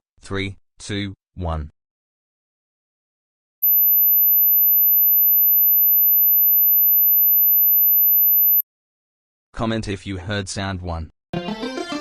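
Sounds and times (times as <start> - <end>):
high-pitched sine tone: 3.6 - 8.6.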